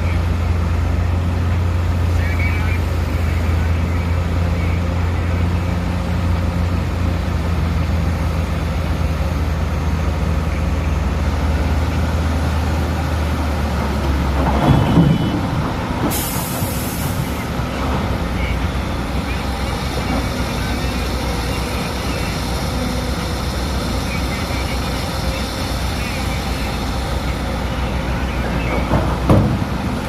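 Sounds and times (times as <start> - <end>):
diesel engine drone: 0.0 - 30.0
air brakes hissing: 16.0 - 17.5
loud knock: 28.9 - 29.7.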